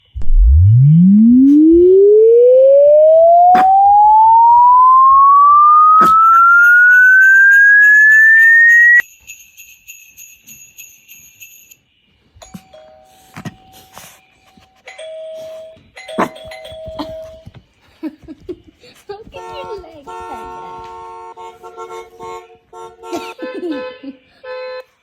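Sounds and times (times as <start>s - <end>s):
rising electronic tone: 0.0s - 9.0s
faint metallic jingling: 9.0s - 14.0s.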